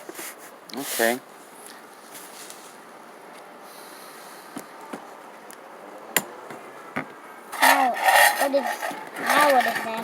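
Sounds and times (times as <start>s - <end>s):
low steady hiss: 0.0s - 7.9s.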